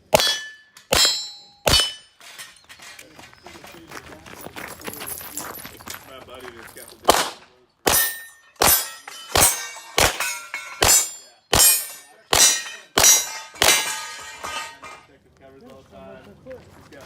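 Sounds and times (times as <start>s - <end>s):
steel plate clanging: 0.0s - 3.9s, 7.9s - 15.0s
pistol shots: 7.0s - 14.2s.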